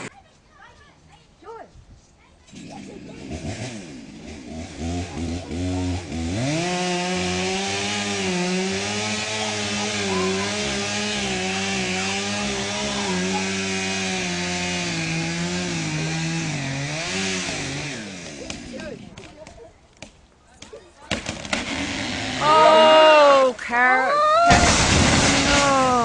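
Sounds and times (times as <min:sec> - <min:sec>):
chainsaw cutting wood: 0:02.5 - 0:19.6, 0:21.1 - 0:23.1, 0:24.5 - 0:26.0.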